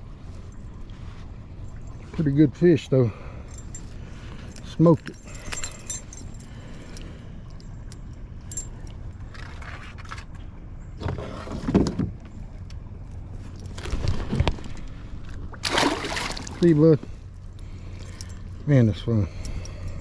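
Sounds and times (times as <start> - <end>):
metal lure blades jingling: 3.4 - 9.5, 17.9 - 20.0.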